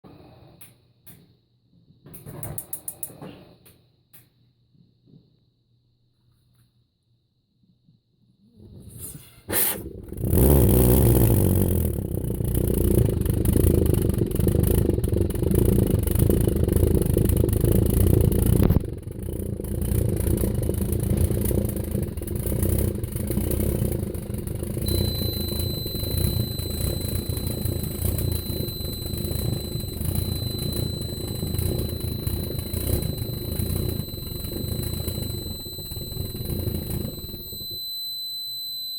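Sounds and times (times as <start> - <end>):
pulse jet engine running: 9.9 - 38.2
faint high steady tone: 12.7 - 38.9.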